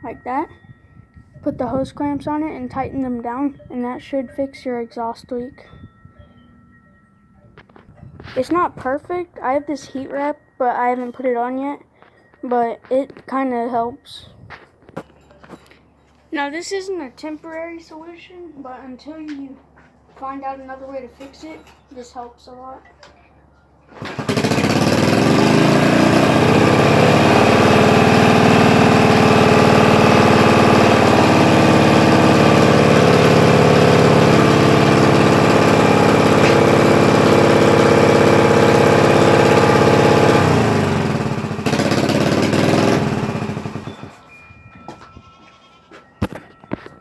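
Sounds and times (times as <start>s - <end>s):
motorcycle engine high idle: 24.1s - 44.2s.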